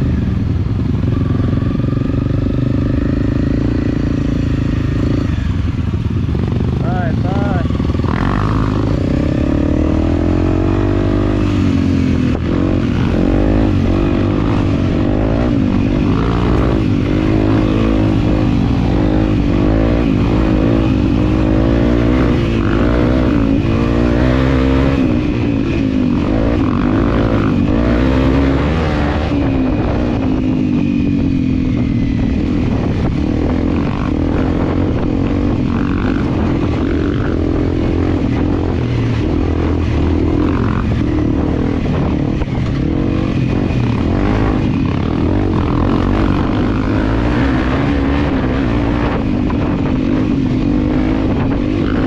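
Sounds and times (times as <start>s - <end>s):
dirt bike engine revving: 0.0s - 52.0s.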